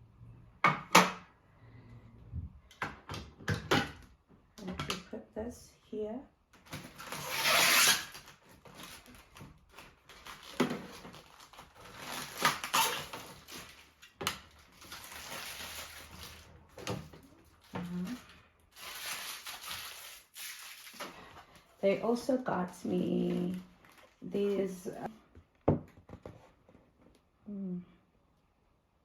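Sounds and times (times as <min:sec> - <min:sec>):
packaging rustling: 0:06.6 - 0:21.8, 0:23.0 - 0:25.0.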